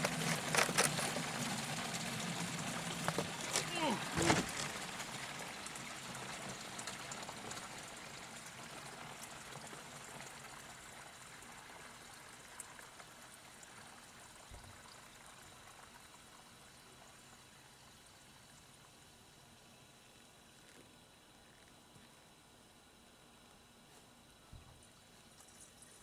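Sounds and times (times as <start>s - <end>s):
coolant pouring into container: 0.0s - 19.3s.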